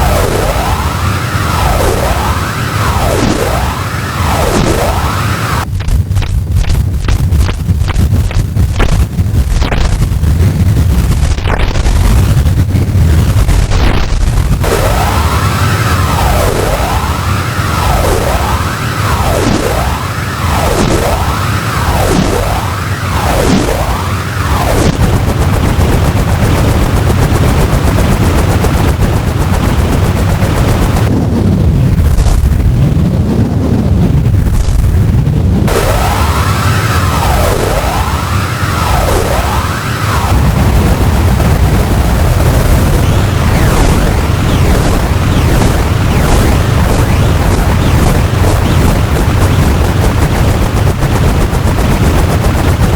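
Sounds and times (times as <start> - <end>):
synthesizer low rumble: 0.0 - 52.9
crackling clicks: 1.4 - 25.6.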